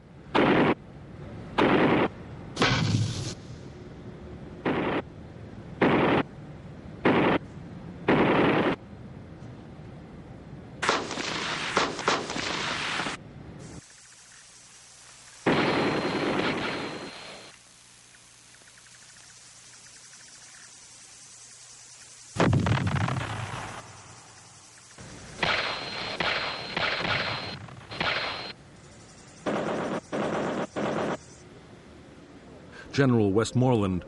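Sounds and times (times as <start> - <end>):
gunfire bursts: 0.3 - 0.8, 1.6 - 3.4, 5.8 - 6.3, 7.0 - 7.4, 8.0 - 8.8, 10.8 - 13.2, 15.4 - 17.5, 25.0 - 28.6, 29.4 - 31.4.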